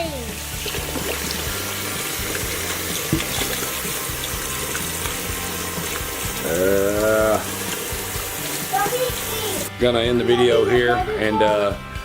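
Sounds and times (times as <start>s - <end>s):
tap water running into sink: 0.4s - 9.7s.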